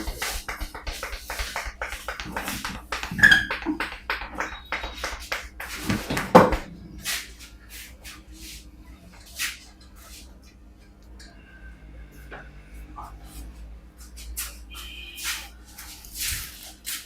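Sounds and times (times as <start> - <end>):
hands tapping and slapping head: 0.0 - 6.8.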